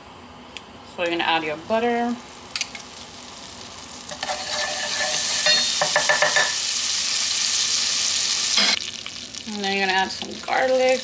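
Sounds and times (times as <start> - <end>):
butter sizzling in a pan: 1.6 - 11.0
utensil scraping a pan: 4.1 - 6.6.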